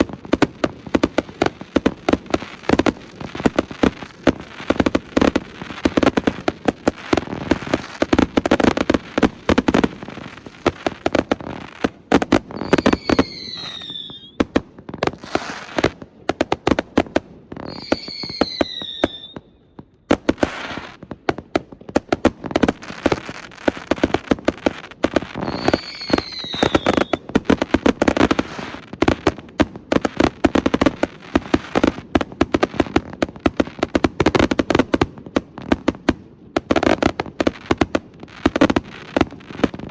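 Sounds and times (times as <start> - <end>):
fireworks bangs and crackles: 0.0 - 39.9
falling firework whistles: 12.5 - 14.4, 17.6 - 19.7, 25.3 - 27.3.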